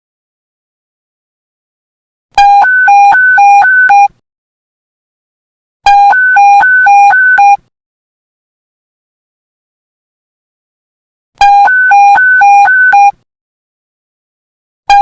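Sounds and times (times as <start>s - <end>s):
two-tone electronic alert beep: 2.4s - 4.1s, 5.9s - 7.6s, 11.4s - 13.2s.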